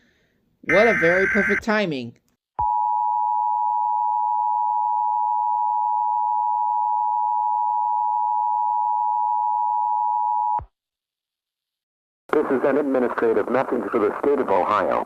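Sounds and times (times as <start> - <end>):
two-tone alarm tone: 0.7 - 1.6.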